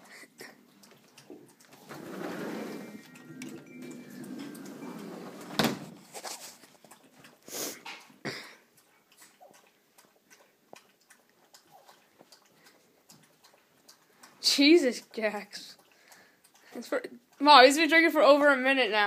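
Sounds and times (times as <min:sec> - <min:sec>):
dog lapping water: 0:00.0 - 0:05.0, 0:06.0 - 0:18.6.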